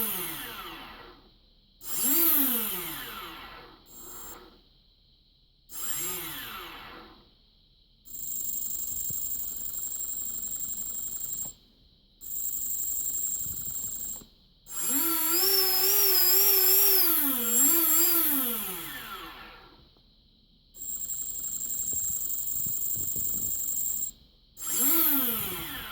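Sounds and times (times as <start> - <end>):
small electric motor whining: 0.0 - 1.1, 1.9 - 4.6, 5.7 - 7.2, 13.4 - 19.8, 20.9 - 25.9.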